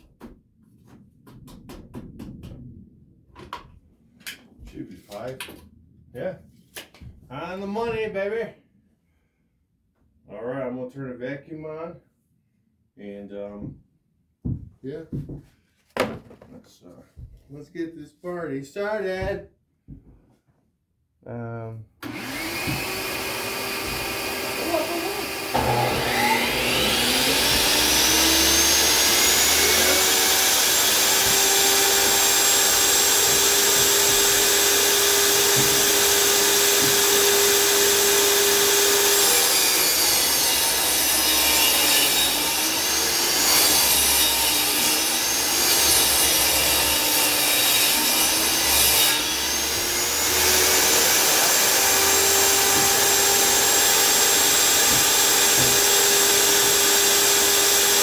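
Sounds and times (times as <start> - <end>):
shop vacuum running: 22.0 - 44.4, 48.8 - 58.0
table saw cutting board: 22.0 - 58.0.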